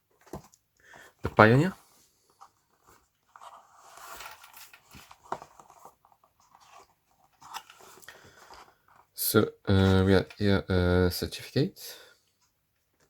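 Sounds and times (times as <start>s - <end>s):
paper and cardboard rustling: 1.3s - 9.2s.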